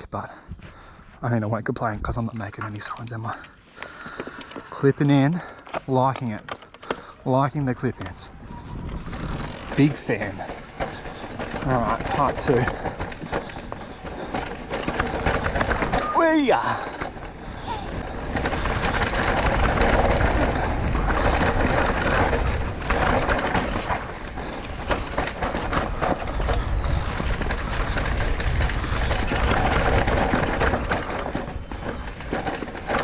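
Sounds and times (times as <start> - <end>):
tyres rumbling over dirt: 0.6 - 33.0
bike rattling: 1.8 - 33.0
wind buffeting microphone: 7.6 - 33.0.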